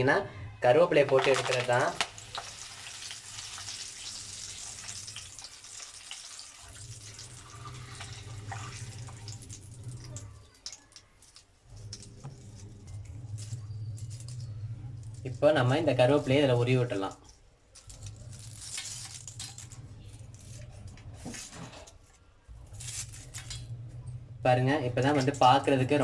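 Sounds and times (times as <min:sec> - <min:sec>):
leaves frying in hot oil: 0:01.0 - 0:11.0.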